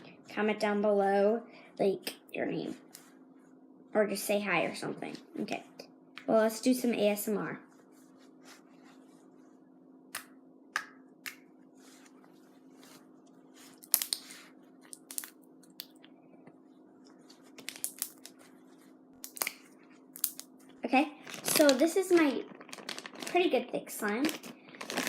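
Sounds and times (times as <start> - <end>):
slime squishing with clicks and pops: 13.8 - 14.3, 14.9 - 16.1.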